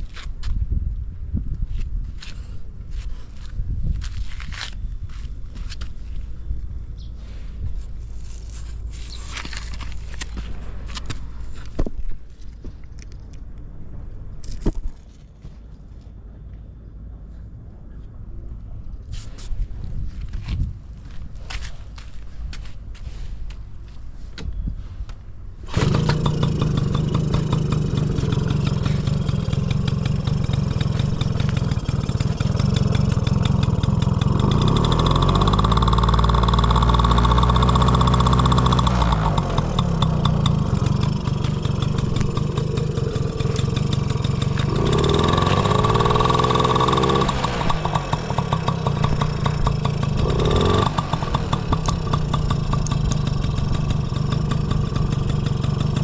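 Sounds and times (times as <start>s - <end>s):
two-stroke engine starting and revving: 25.6s - 56.0s.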